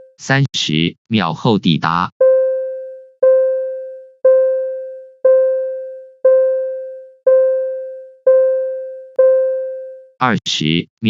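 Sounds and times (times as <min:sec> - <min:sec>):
piano-like ding: 0:02.2 - 0:10.2.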